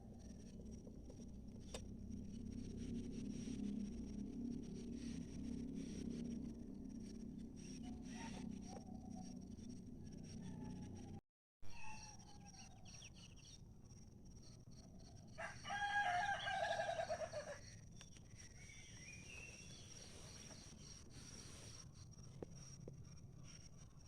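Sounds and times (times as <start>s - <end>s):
faint bird chirps: 7.6s - 13.7s, 16.1s - 22.4s
rooster crowing: 7.8s - 9.2s, 10.0s - 12.8s, 15.3s - 17.6s.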